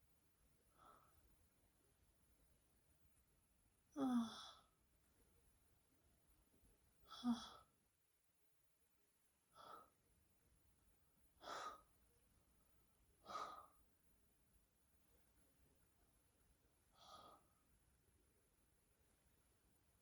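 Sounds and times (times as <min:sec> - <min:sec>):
woman breathing softly: 0:00.7 - 0:01.3, 0:09.5 - 0:10.0, 0:11.4 - 0:12.0, 0:13.2 - 0:13.9, 0:16.9 - 0:17.7.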